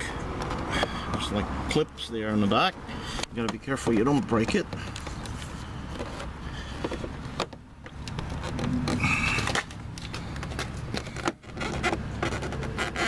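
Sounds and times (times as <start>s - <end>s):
plastic trim clicks and scrapes: 3.1s - 13.0s.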